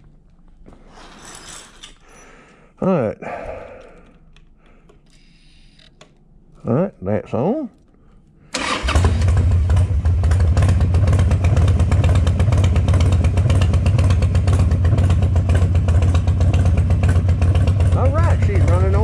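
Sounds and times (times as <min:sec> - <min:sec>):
motorcycle engine idling: 0:08.6 - 0:19.0.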